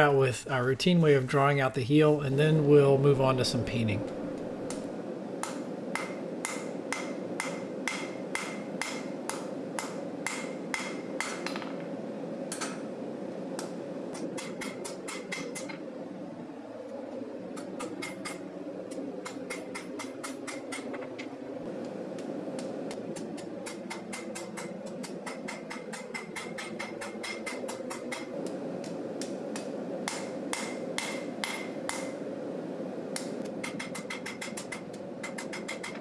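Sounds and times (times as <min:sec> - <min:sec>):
steady hum: 0:00.0 - 0:36.0
hammer striking steel on anvil: 0:05.4 - 0:11.8, 0:13.6 - 0:15.8, 0:19.2 - 0:21.0, 0:23.2 - 0:28.3, 0:29.2 - 0:32.2, 0:33.2 - 0:36.0.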